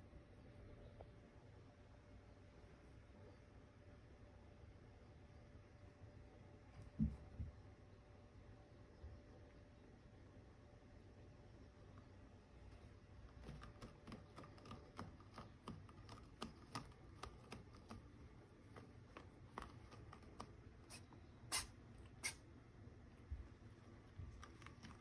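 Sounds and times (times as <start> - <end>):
kitten claws clicking and scratching: 12.7 - 22.4, 23.5 - 25.0.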